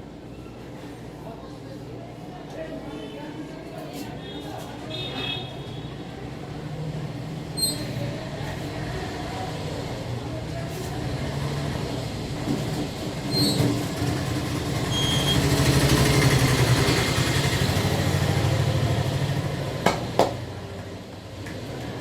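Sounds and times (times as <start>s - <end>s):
vehicle engine running: 14.0s - 19.8s.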